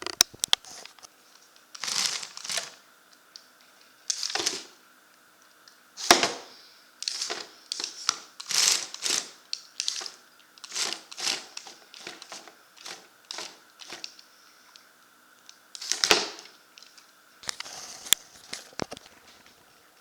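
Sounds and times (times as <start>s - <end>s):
faint steady whine: 0.0s - 20.0s
plastic parts clattering: 1.8s - 2.8s, 4.1s - 4.7s, 6.0s - 14.1s.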